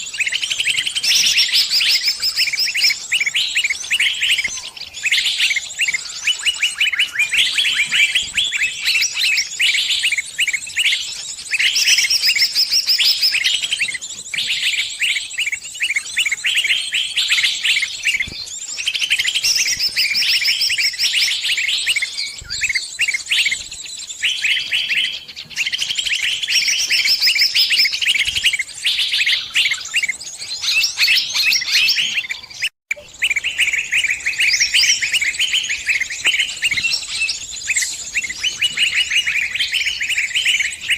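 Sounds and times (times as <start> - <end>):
birds chirping and twittering: 0.0 - 40.9.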